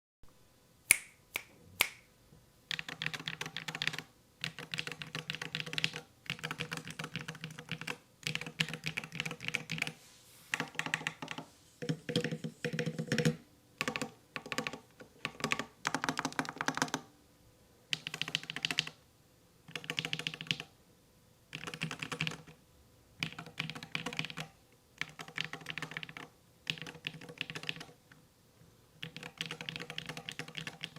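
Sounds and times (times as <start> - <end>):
rapid keystrokes: 2.7 - 17.0, 17.9 - 19.0, 19.7 - 20.7, 21.5 - 22.6, 23.2 - 28.0, 29.0 - 30.9
keyboard typing: 2.7 - 17.1, 17.9 - 19.0, 19.7 - 20.7, 21.5 - 22.6, 23.2 - 28.0, 29.0 - 30.9.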